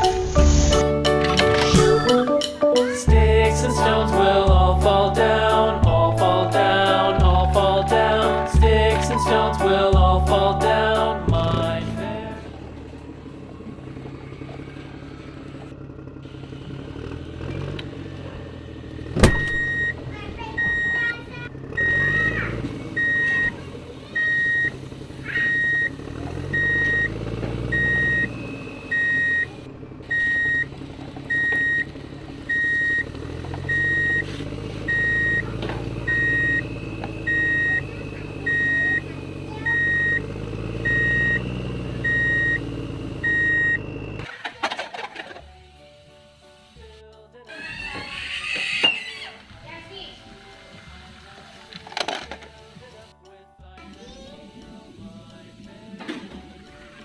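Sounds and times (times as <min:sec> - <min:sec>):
toy truck reversing beeper: 0:19.5 - 0:46.9.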